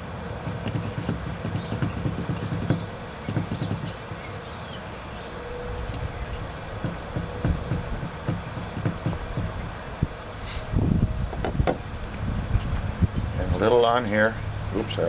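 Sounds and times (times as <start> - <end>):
wooden parts clicking and knocking: 0.4 - 4.2, 5.9 - 9.8.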